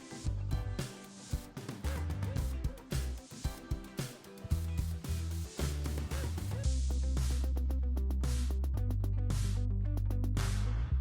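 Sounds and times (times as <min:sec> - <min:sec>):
electronic music with heavy bass: 0:00.2 - 0:03.9.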